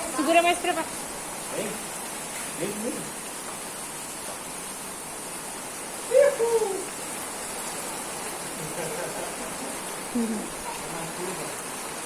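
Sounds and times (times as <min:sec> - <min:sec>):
steady rain falling: 0:00.0 - 0:12.0
person crying out: 0:06.1 - 0:06.9.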